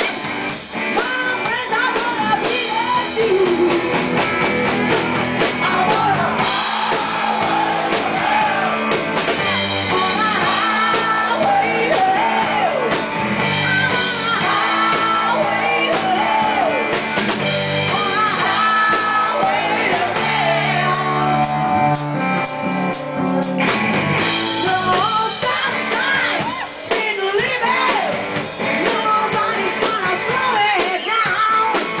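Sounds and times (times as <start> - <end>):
live rock band playing: 0.0 - 32.0
lead vocal singing: 5.6 - 22.0, 24.6 - 32.0
people shouting: 6.1 - 9.0.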